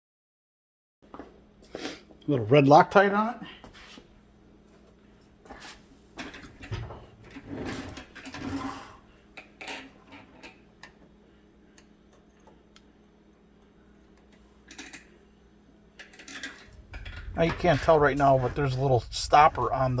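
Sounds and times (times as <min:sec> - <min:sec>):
faint steady hum: 0:01.1 - 0:20.0
metal parts rubbing and knocking: 0:16.0 - 0:20.0.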